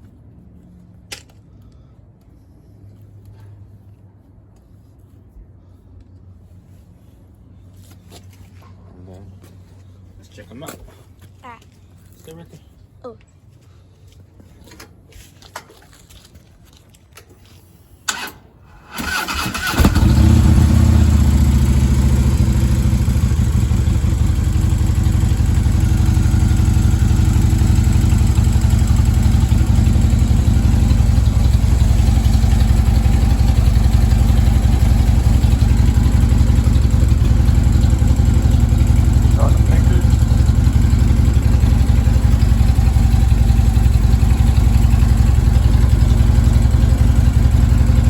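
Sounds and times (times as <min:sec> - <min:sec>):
motorcycle engine starting and idling: 0:18.0 - 0:48.0.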